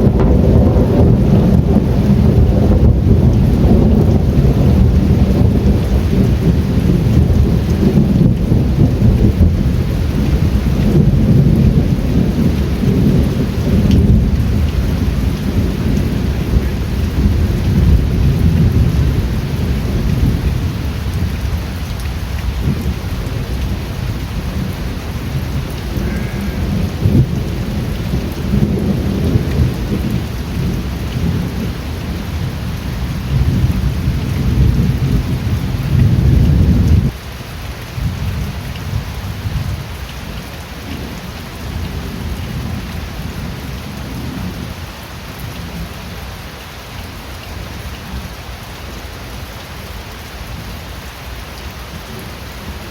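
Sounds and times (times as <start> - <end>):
rolling thunder rumble: 0.0 - 37.2
heavy rain: 0.0 - 52.9.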